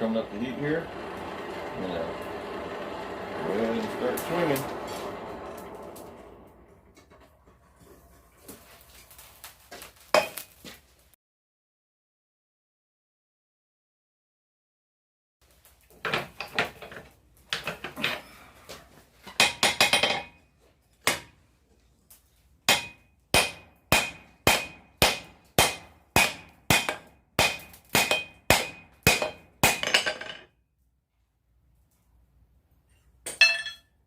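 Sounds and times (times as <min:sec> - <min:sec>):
metallic ring: 0:00.0 - 0:09.0, 0:33.3 - 0:34.0
hammer striking steel on anvil: 0:22.7 - 0:30.3.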